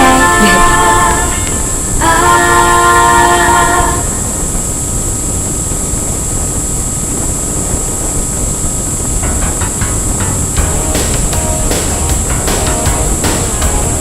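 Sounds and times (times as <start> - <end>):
pop song chord: 0.0 - 4.0, 9.2 - 14.0
high motor whine: 0.0 - 14.0
wind rushing on aircraft: 4.1 - 9.3.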